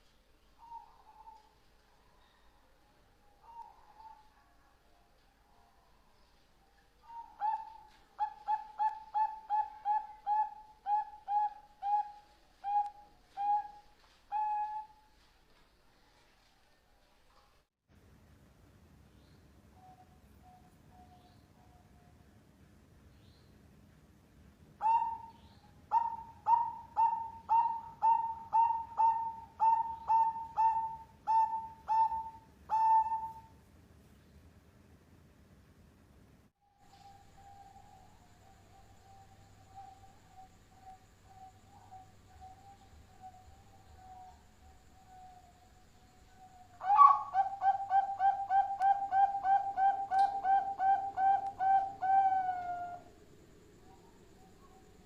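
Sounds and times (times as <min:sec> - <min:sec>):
dove cooing: 0:00.6 - 0:02.5, 0:07.0 - 0:15.0, 0:24.8 - 0:33.5, 0:46.4 - 0:53.2.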